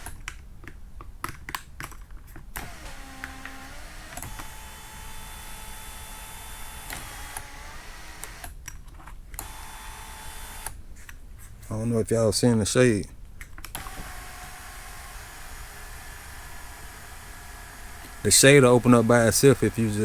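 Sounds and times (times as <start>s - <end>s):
clicks: 0.0s - 4.6s
sunroof motor whine: 2.6s - 8.5s, 9.4s - 10.8s, 13.8s - 20.0s.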